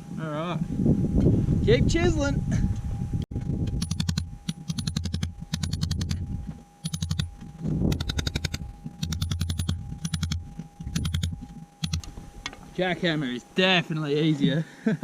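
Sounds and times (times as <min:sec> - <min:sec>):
hammer and chisel on rock: 0:03.8 - 0:06.2, 0:06.8 - 0:07.3, 0:07.9 - 0:12.1.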